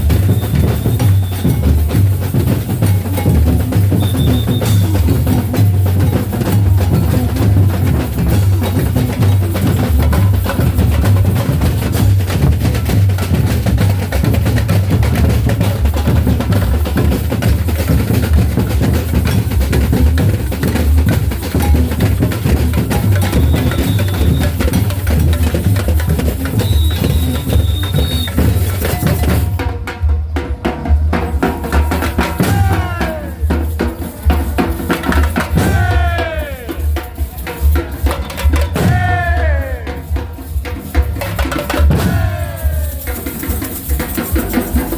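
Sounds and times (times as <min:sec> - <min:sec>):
heavy bass drum: 0:00.0 - 0:26.6, 0:32.2 - 0:33.6, 0:35.3 - 0:36.8, 0:38.6 - 0:40.4, 0:41.3 - 0:43.2
drum-led percussion music: 0:00.0 - 0:44.9.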